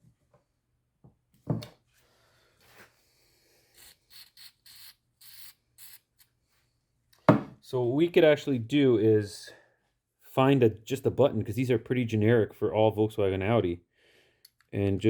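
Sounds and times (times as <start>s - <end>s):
thump: 7.3s - 7.6s.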